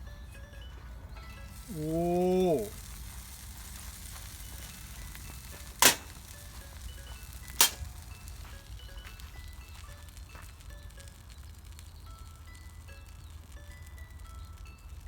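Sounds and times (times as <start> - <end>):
sparse bell-like background music: 0.0 - 2.5, 6.4 - 11.3, 12.1 - 15.0
sharp cracks: 1.6 - 8.4.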